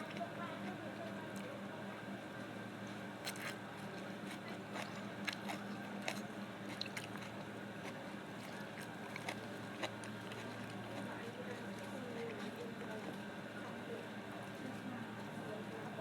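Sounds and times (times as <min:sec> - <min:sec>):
steady low hum: 0:00.0 - 0:16.0
wet squishing: 0:03.2 - 0:13.3
food being chewed: 0:03.2 - 0:13.8.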